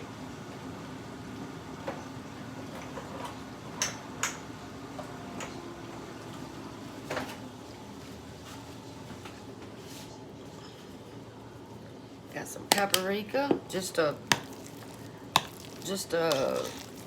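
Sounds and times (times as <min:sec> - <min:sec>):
kitchen containers being handled: 0:12.7 - 0:17.0.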